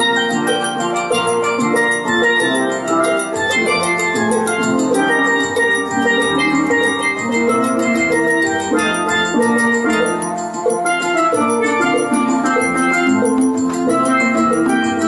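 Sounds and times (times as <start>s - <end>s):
steel pans playing: 0.0s - 15.0s.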